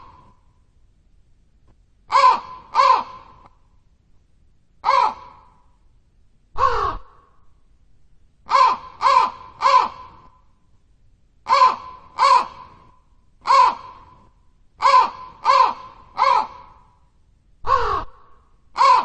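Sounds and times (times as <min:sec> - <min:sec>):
crow cawing: 0:02.1 - 0:03.6, 0:04.8 - 0:05.6, 0:06.6 - 0:07.4, 0:08.5 - 0:10.4, 0:11.5 - 0:14.2, 0:14.8 - 0:17.0, 0:17.7 - 0:19.0.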